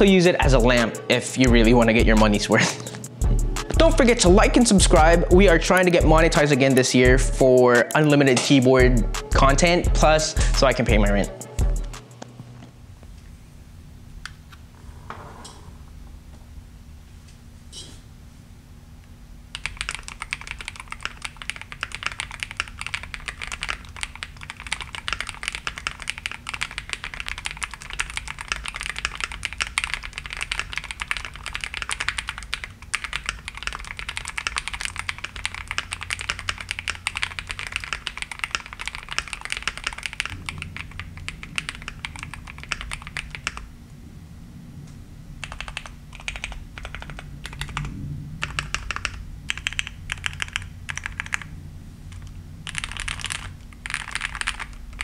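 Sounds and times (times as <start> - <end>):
mechanical keyboard typing: 19.5 - 43.7, 45.4 - 51.5, 52.1 - 55.0.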